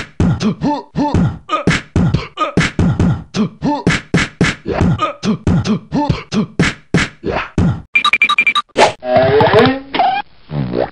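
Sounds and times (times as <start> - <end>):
person beatboxing: 0.0 - 7.9.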